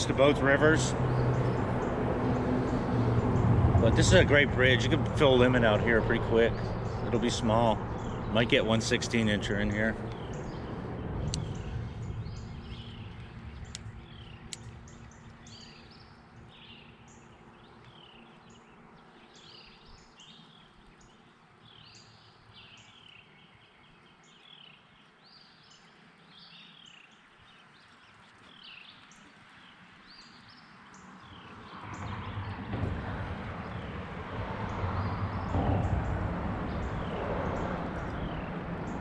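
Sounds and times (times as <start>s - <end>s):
low outdoor rumble: 0.0s - 19.0s, 31.4s - 39.0s
sharp ticks: 12.8s - 15.4s.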